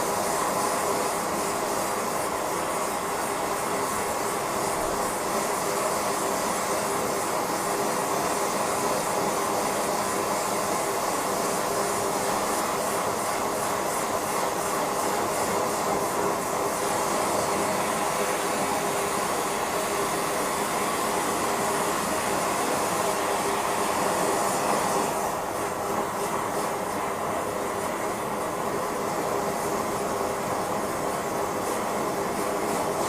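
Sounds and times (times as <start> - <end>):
gas burner rushing: 0.0 - 33.0.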